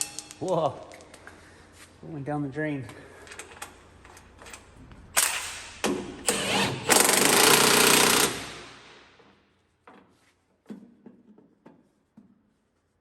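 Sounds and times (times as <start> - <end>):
power tool bursts: 6.2 - 8.9.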